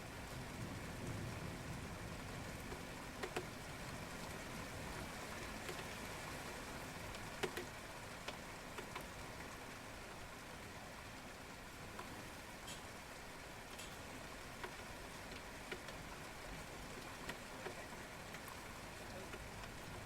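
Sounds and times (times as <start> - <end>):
steady rain hiss: 0.0 - 20.0
raindrop taps: 1.8 - 6.1, 7.0 - 9.6, 11.9 - 20.0.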